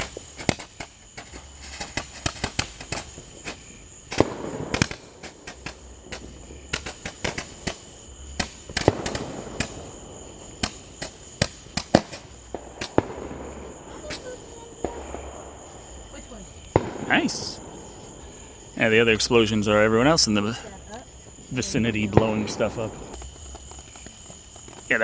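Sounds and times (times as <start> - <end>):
firework bangs: 0.0 - 25.0
fireworks popping and crackling: 0.0 - 25.0
hissing firework spray: 0.0 - 25.0.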